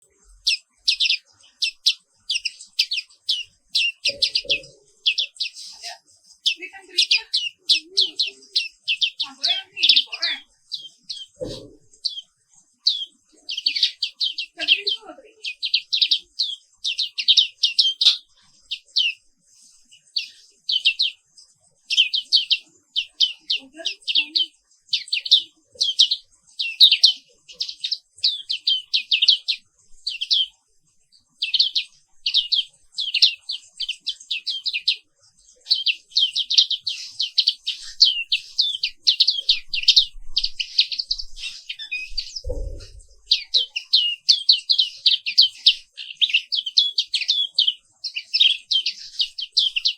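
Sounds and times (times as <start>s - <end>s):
bird chirping trills: 0.0s - 49.9s
low thump: 42.4s - 43.2s.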